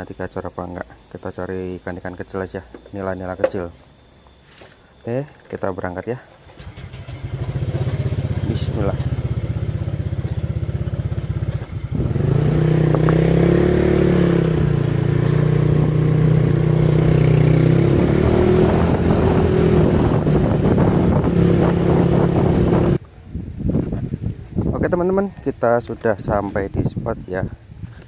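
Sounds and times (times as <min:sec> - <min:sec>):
motorcycle engine pulling away: 0:06.4 - 0:23.0.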